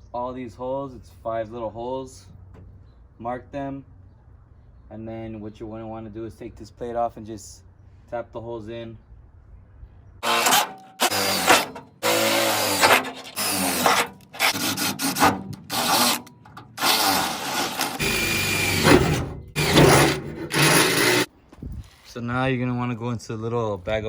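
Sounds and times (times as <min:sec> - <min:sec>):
power drill into sheet metal: 0:10.2 - 0:21.3.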